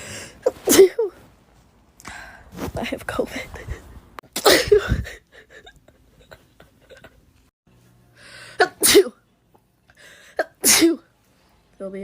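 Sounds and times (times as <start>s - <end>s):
person sneezing: 10.4s - 11.1s.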